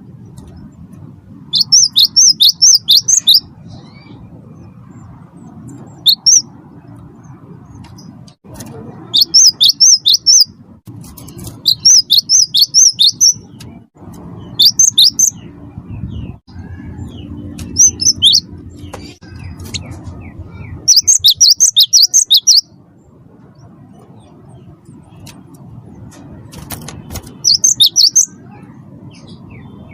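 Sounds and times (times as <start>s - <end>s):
bird singing high rapid notes: 1.5s - 8.4s, 9.0s - 25.5s, 26.6s - 29.9s
low rumble: 3.1s - 9.4s, 13.2s - 21.7s.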